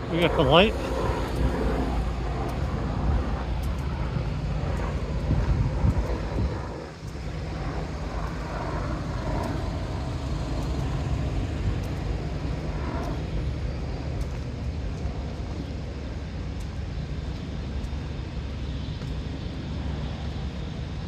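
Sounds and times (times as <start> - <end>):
street traffic rumble: 0.0 - 21.0.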